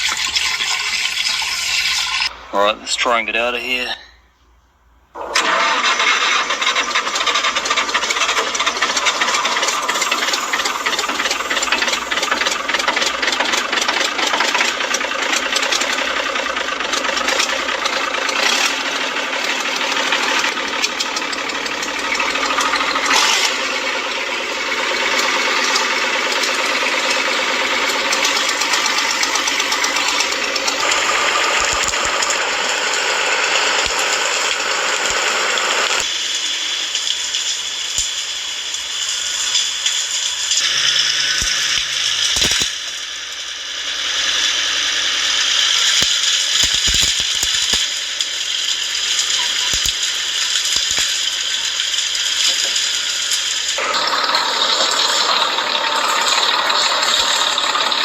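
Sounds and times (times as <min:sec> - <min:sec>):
diesel engine chugging: 0:05.2 - 0:58.0
steel tracks clattering: 0:05.2 - 0:58.0.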